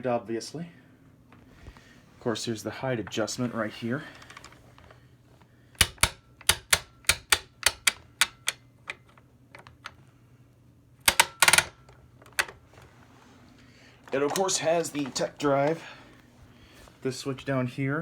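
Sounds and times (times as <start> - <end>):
vacuum height adjuster clicking: 5.8 - 9.9, 11.1 - 12.6.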